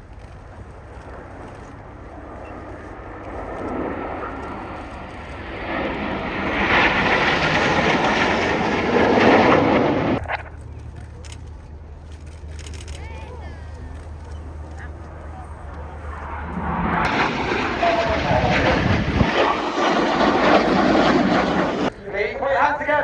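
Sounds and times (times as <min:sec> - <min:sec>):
jets flying past: 0:01.1 - 0:10.6, 0:14.5 - 0:23.0.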